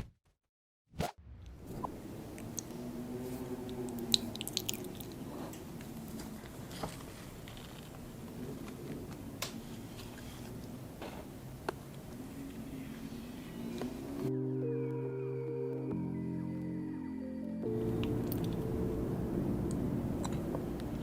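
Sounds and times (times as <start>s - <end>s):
person chewing food: 2.4s - 6.2s.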